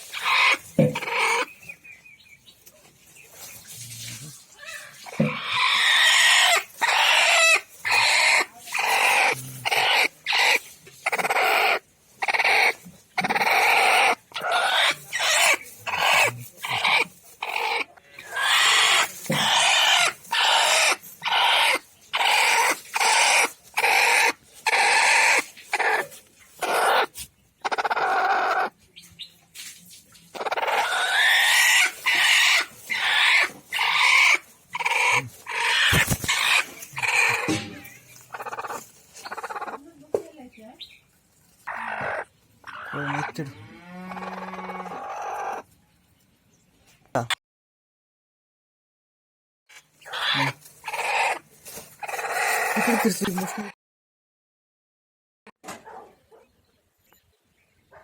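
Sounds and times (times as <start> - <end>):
chickens calling: 0.0 - 3.7, 4.5 - 29.4, 30.3 - 45.8, 49.7 - 53.8.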